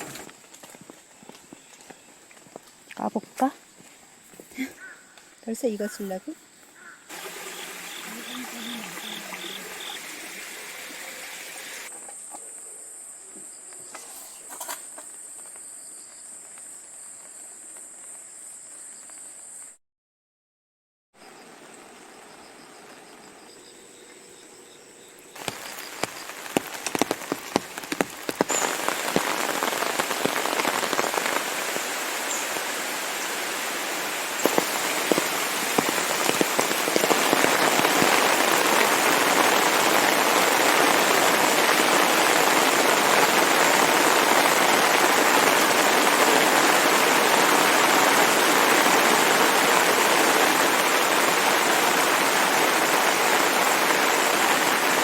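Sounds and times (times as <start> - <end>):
heavy raindrops hitting: 0.0 - 0.9, 7.1 - 11.9, 25.4 - 55.0
rain downpour: 0.0 - 4.0, 7.1 - 11.9, 25.4 - 55.0.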